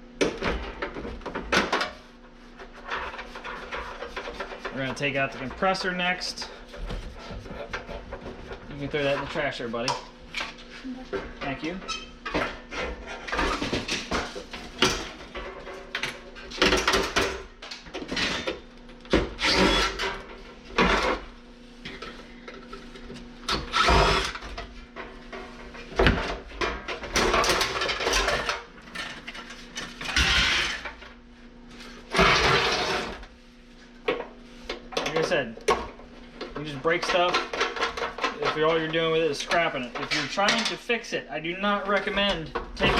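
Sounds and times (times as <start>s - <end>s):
power tool bursts: 19.4s - 20.2s, 23.5s - 24.4s.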